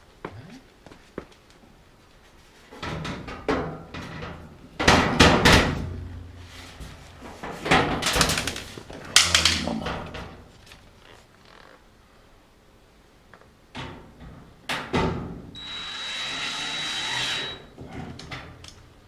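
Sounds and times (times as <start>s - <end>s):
sheet-metal panels clattering: 2.7s - 10.6s.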